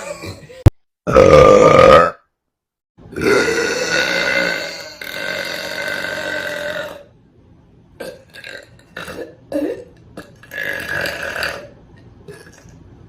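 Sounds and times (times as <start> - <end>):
girl belching: 1.1 - 2.2, 3.2 - 7.1.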